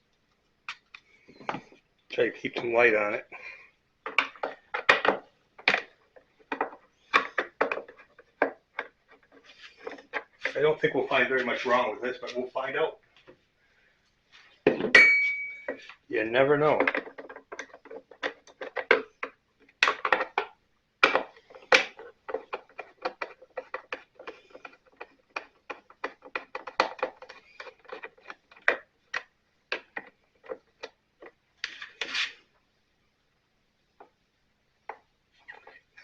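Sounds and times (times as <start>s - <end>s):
tools and plastic parts clicking: 16.8s - 32.3s.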